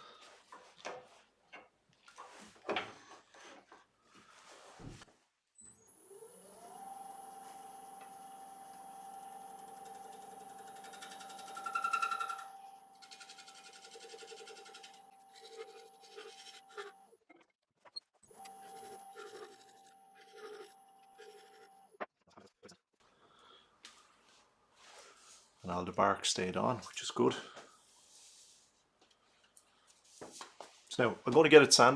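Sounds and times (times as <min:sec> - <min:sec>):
wood lathe motor whining: 0:05.7 - 0:17.0, 0:18.3 - 0:21.9.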